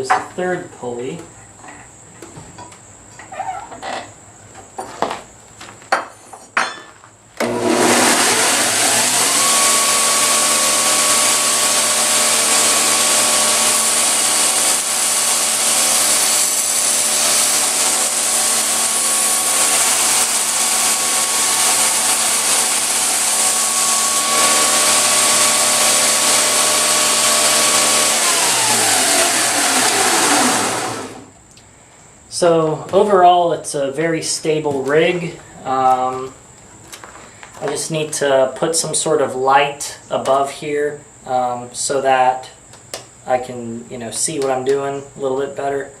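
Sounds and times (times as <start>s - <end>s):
belt grinder motor whining: 7.4s - 31.3s
grinder belt hissing: 7.4s - 31.3s.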